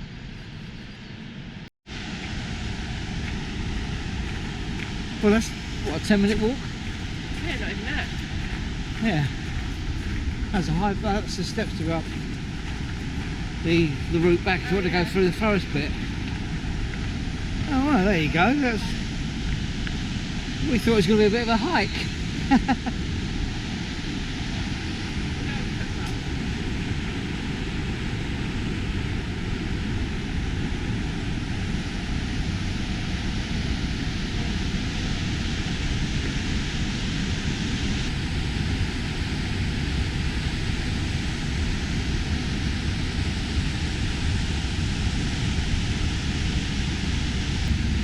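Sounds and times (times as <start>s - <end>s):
waterfall roaring: 1.9s - 30.5s.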